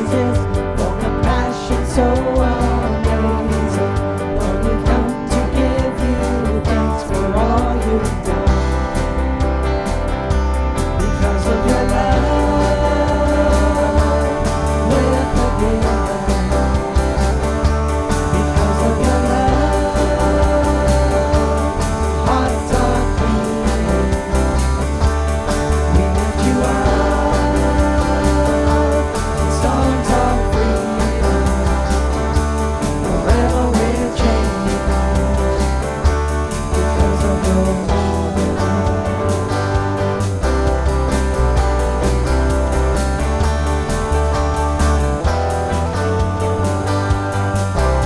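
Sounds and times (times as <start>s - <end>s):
person singing: 0.0s - 9.0s, 11.0s - 39.7s
band playing praise song: 0.0s - 48.0s.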